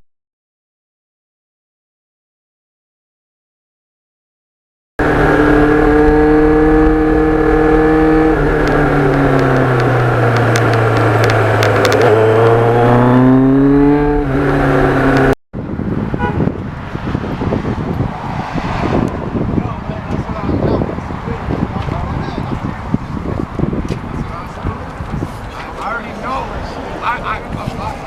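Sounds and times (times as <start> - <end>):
motorcycle engine running: 5.0 - 15.4
rough noise: 5.0 - 15.4.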